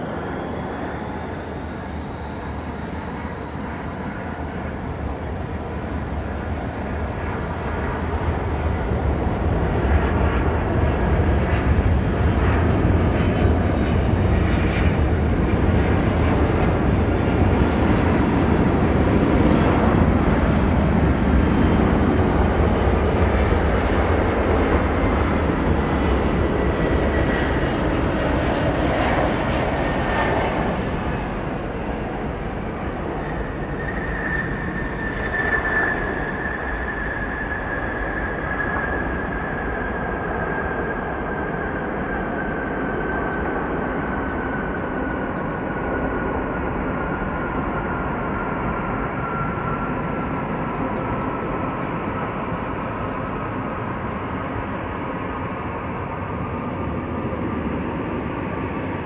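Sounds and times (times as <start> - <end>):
jet engines roaring: 0.0 - 59.0.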